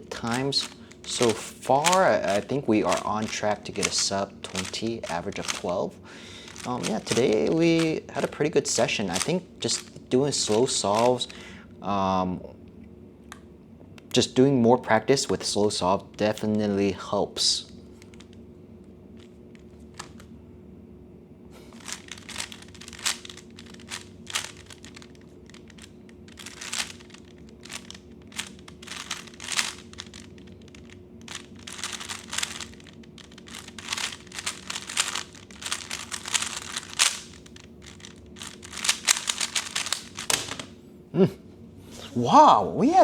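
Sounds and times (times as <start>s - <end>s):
puzzle cube plastic clicks: 0.2s - 5.8s, 6.4s - 11.4s, 19.6s - 20.3s, 21.7s - 40.7s.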